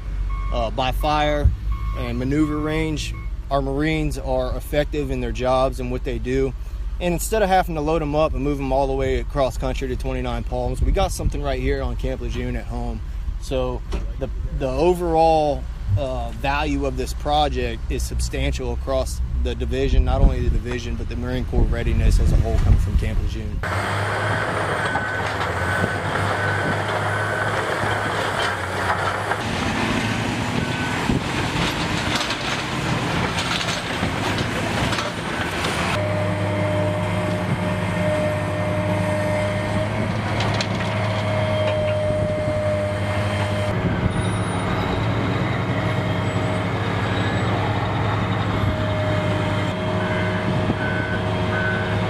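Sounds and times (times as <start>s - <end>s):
reversing alarm beeping: 0.3s - 1.1s, 1.7s - 2.2s, 2.8s - 3.4s, 23.7s - 28.2s, 30.6s - 31.2s, 35.3s - 40.1s, 41.2s - 45.0s, 49.9s - 52.0s
heavy diesel machinery running: 23.6s - 52.0s.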